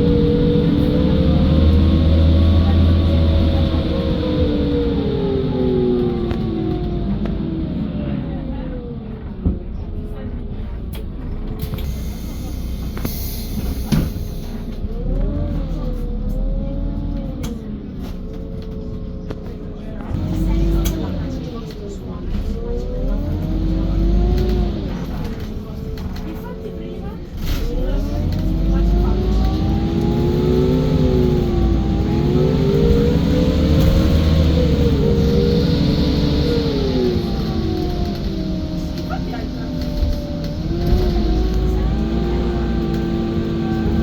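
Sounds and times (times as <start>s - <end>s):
bus rumble with whine: 0.0s - 44.0s.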